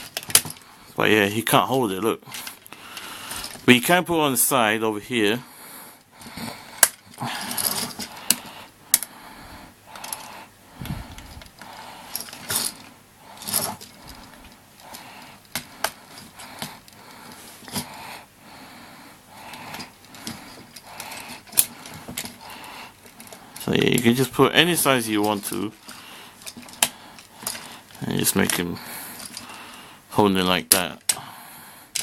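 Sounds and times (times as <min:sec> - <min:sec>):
plastic toy parts clicking: 0:00.0 - 0:00.6, 0:19.7 - 0:22.4, 0:30.6 - 0:31.2
rustling: 0:06.2 - 0:18.2.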